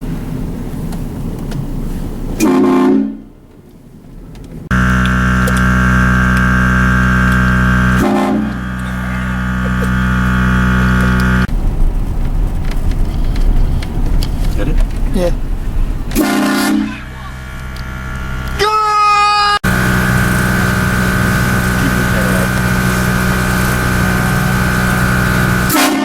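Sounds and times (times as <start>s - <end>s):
train air horn blasting: 2.4s - 3.3s, 4.7s - 11.5s, 16.2s - 18.4s, 19.6s - 26.0s
low vehicle rumble: 3.1s - 25.8s.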